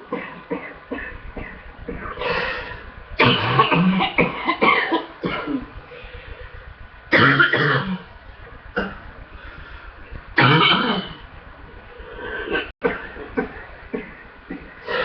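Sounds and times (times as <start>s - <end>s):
person coughing hard: 3.2s - 5.7s, 7.2s - 8.1s, 10.4s - 11.2s, 12.5s - 15.0s.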